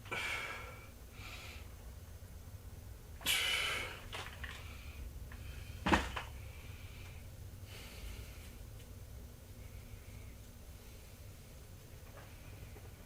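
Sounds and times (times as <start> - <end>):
person breathing: 0.1 - 1.8, 6.4 - 8.7.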